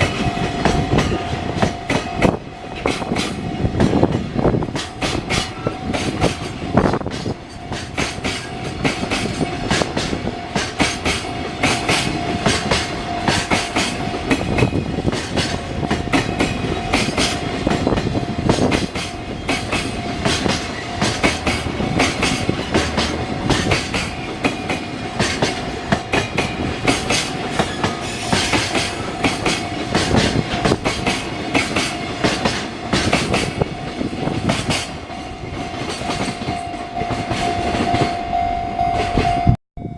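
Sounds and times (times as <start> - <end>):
steady high tone: 0.0 - 3.8, 34.9 - 39.9
wheels clicking over rail joints: 0.0 - 39.3
train running noise: 0.0 - 39.9.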